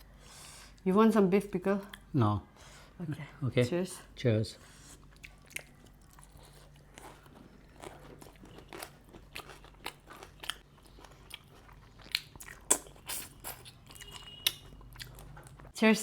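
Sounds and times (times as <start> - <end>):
chewing and crunching seafood: 4.8 - 15.8.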